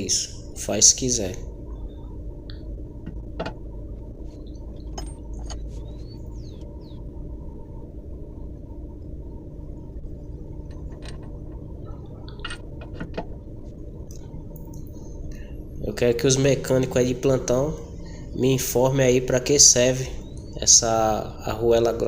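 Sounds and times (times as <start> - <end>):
low background hum: 0.0 - 22.0
metal car parts clicking: 4.8 - 5.7, 10.6 - 13.4.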